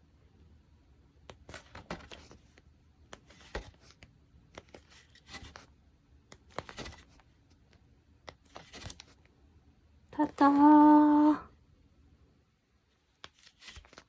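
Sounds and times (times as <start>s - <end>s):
paper pages turning: 1.3s - 5.7s, 6.3s - 7.6s, 8.3s - 9.3s, 13.2s - 14.0s.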